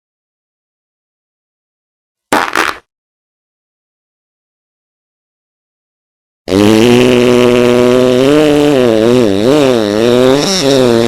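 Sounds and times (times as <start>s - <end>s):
buzzy fart sound: 2.3s - 2.8s, 6.5s - 8.2s.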